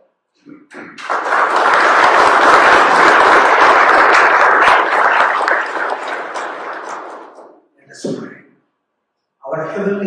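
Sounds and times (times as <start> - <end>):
crowd applause: 0.8 - 7.6.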